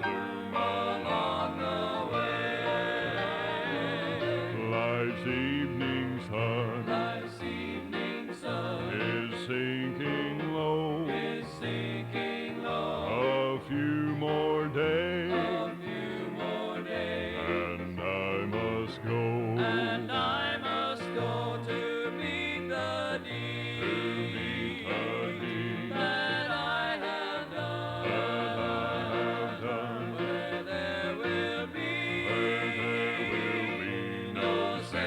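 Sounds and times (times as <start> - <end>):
guitar: 0.0 - 35.0
person singing with vibrato: 0.0 - 35.0.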